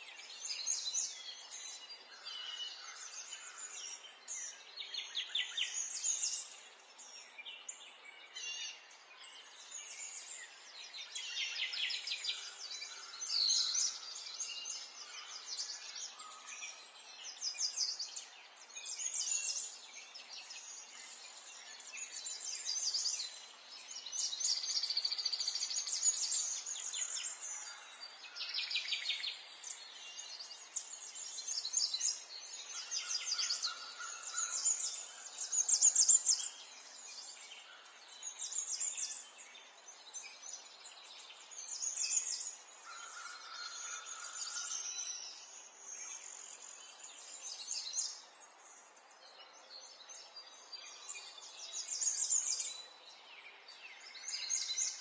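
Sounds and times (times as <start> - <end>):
birds singing and calling: 0.0 - 55.0.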